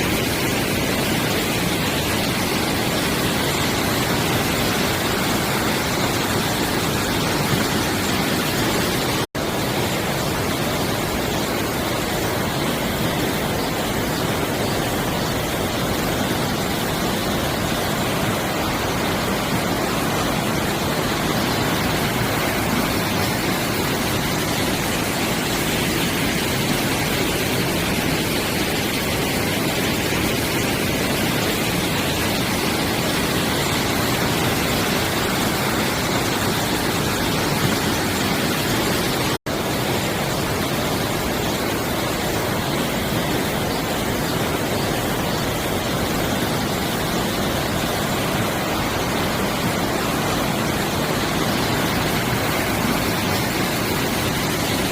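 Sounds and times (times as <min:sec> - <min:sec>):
stream water rushing: 0:00.0 - 0:54.9.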